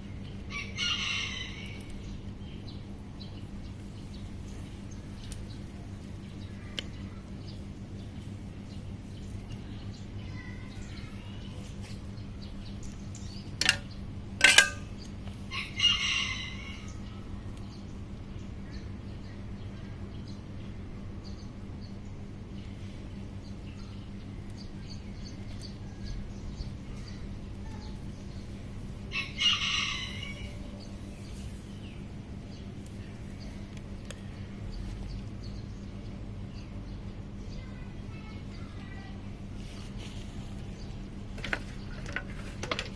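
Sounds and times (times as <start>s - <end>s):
rooster crowing: 0.5s - 1.9s, 15.5s - 17.0s, 29.1s - 30.7s.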